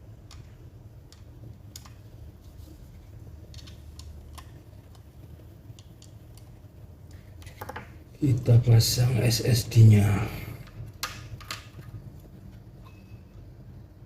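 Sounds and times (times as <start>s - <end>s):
low steady hum: 0.0s - 14.0s
small clicks and taps: 0.2s - 2.1s, 3.4s - 5.1s, 5.7s - 8.0s.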